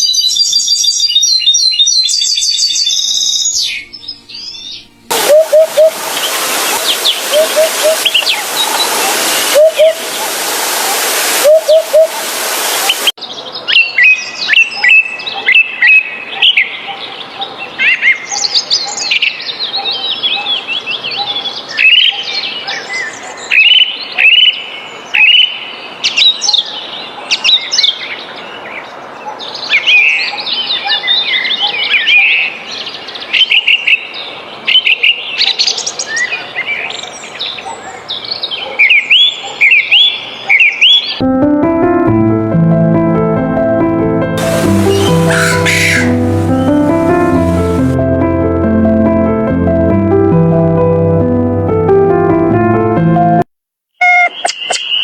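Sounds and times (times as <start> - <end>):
songbirds chirping and trilling: 0.0 - 41.2, 44.4 - 48.0, 54.3 - 55.0
loud rushing hiss: 5.1 - 13.1, 44.4 - 48.0.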